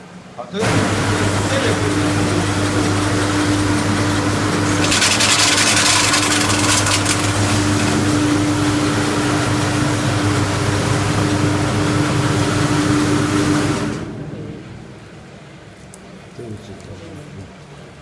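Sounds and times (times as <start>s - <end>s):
fish scaling machine humming: 0.6s - 17.3s
machine rattling clatter: 4.6s - 8.1s.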